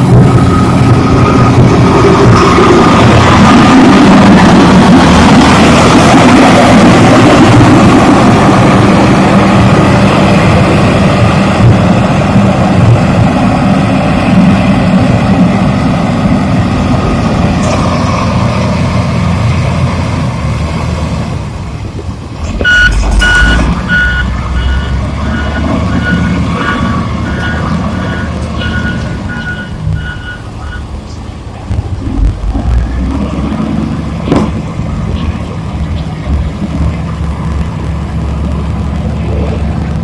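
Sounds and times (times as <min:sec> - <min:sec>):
diesel engine running: 0:00.0 - 0:40.0
reversing alarm beeping: 0:22.6 - 0:31.0.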